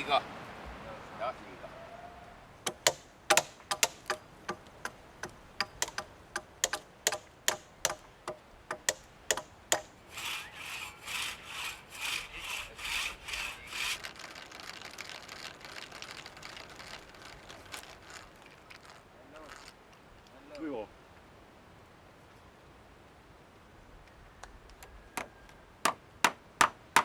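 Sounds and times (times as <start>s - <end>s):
sharp knocks on wood: 2.6s - 9.9s, 25.2s - 27.0s
hand saw cutting wood: 2.7s - 14.2s.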